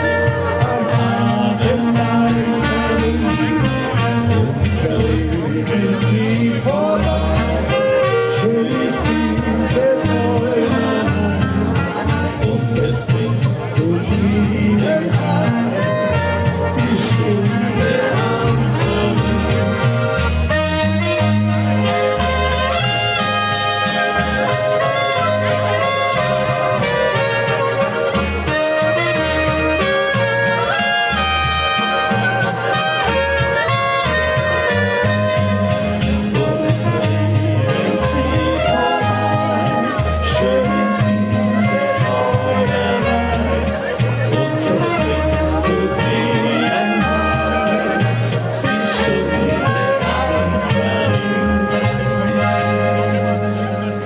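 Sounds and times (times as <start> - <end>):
person singing: 0.0 - 20.0, 29.2 - 53.2
bass line: 0.0 - 54.0
live band music: 0.0 - 54.0.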